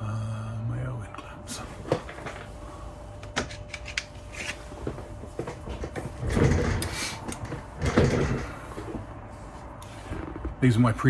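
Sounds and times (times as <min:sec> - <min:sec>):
metal clamps sliding and scraping: 0:03.4 - 0:04.7.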